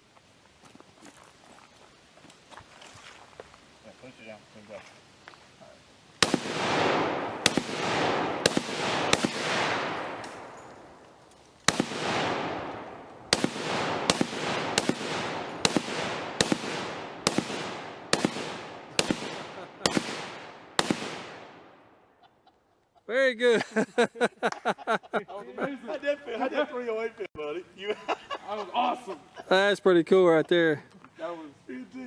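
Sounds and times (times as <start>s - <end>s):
rifle shots with echo: 6.2s - 11.0s, 11.7s - 21.8s.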